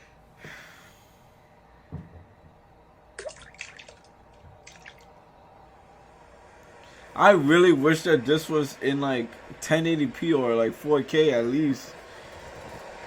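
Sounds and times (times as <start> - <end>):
soft thud: 1.9 - 2.6.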